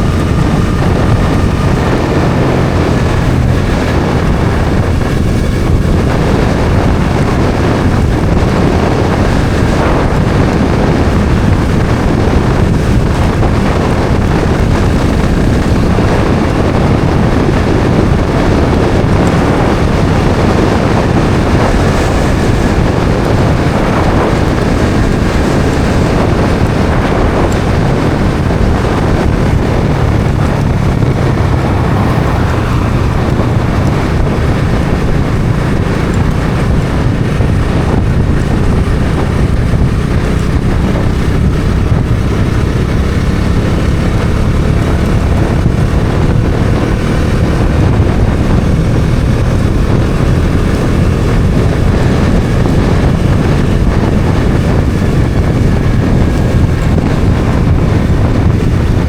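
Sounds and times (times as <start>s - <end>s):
motorcycle engine running: 0.0s - 59.0s
wind noise on microphone: 0.0s - 59.0s.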